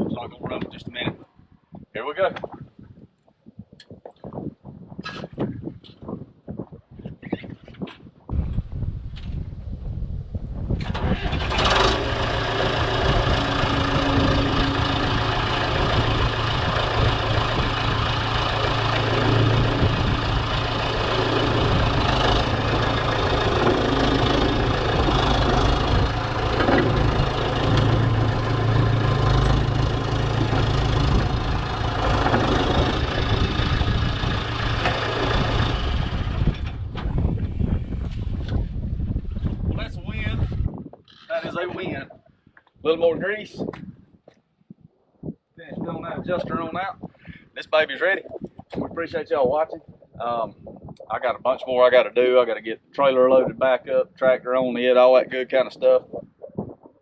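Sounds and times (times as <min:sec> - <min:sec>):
diesel engine running: 0:10.8 - 0:38.4.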